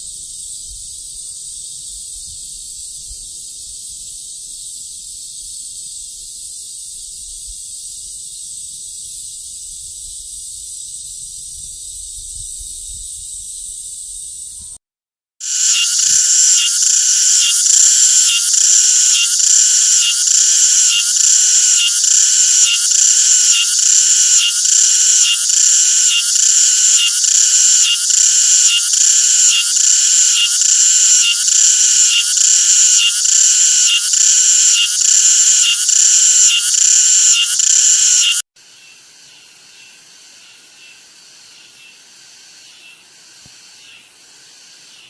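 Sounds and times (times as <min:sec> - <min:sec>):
cicada buzzing: 0:15.4 - 0:45.0.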